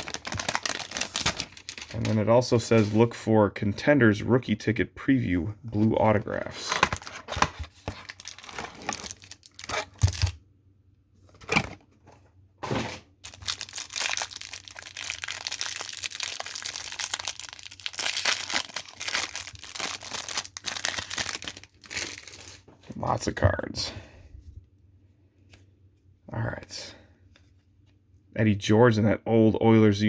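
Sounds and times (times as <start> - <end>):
plastic wrapping torn and crinkled: 0.0 - 2.8, 6.8 - 10.4, 13.2 - 22.7.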